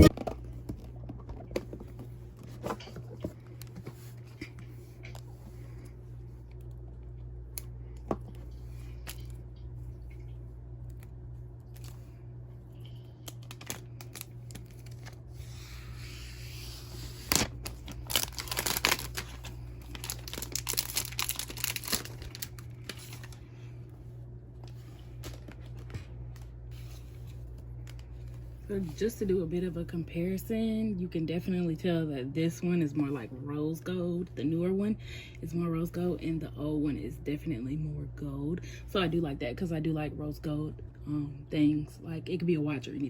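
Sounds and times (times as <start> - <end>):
packaging tearing and crinkling: 13.2 - 15.3, 17.0 - 23.4
packaging clicks: 17.3 - 23.4.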